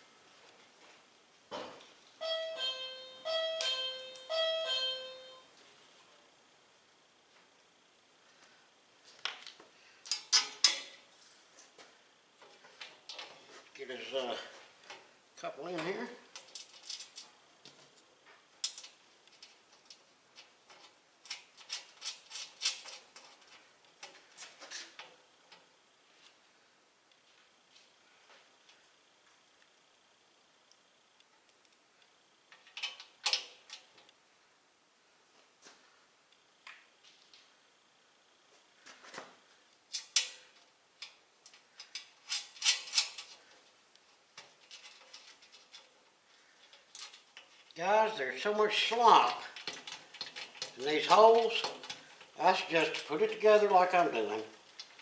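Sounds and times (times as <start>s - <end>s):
metallic clicks of bolts and nuts: 10.0s - 10.9s, 41.0s - 43.4s.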